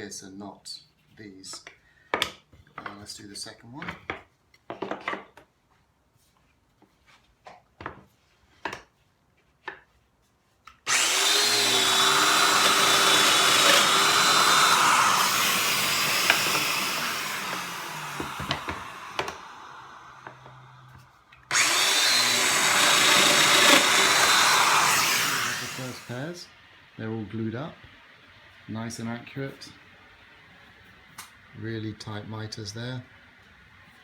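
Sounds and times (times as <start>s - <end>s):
power tool motor whine: 10.9s - 26.3s.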